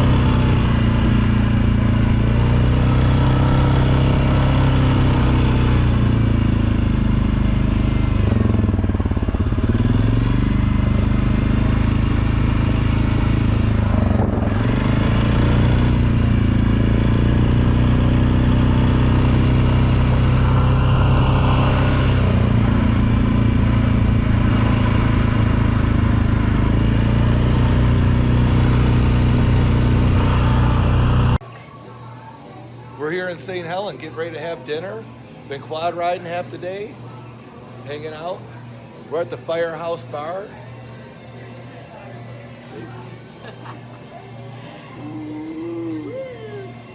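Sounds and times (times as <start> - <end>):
atv engine running: 0.0 - 31.4.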